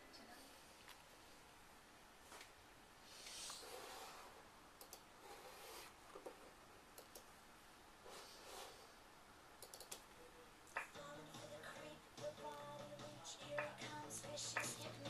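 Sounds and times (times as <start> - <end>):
soft breaths: 2.2 - 6.6, 8.0 - 9.2.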